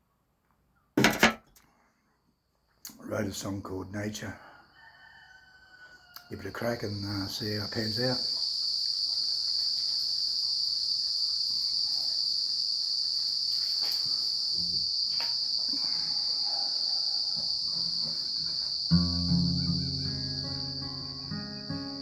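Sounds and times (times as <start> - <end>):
insects chirring: 5.9 - 22.0.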